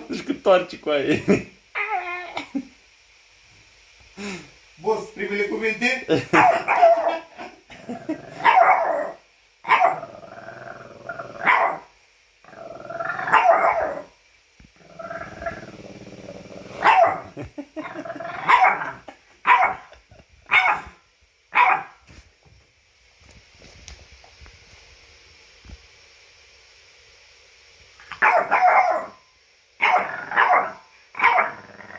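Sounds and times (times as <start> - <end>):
dog grumbling whines: 1.7 - 2.6, 14.8 - 19.1
dog barking: 6.4 - 7.3, 8.4 - 10.0, 11.4 - 11.9, 13.3 - 14.0, 16.8 - 17.3, 18.5 - 22.0, 28.1 - 29.2, 29.8 - 31.6.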